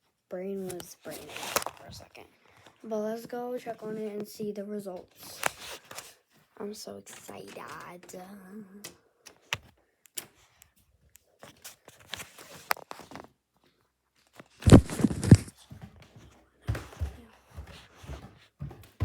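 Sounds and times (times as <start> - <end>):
clicks and rustling: 14.2 - 15.6
dull thumps: 14.7 - 15.5.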